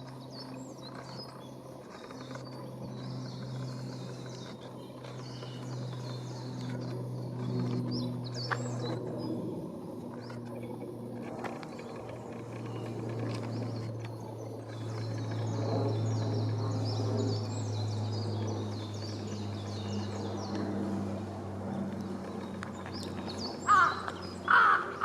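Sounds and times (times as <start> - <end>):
steady low hum: 0.0 - 25.0
birds calling: 21.6 - 25.0.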